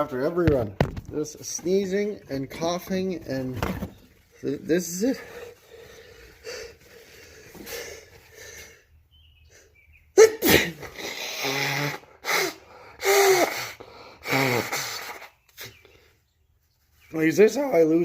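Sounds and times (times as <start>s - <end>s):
short breaths: 5.2s - 9.8s, 10.8s - 16.4s
man sneezing: 10.2s - 15.7s.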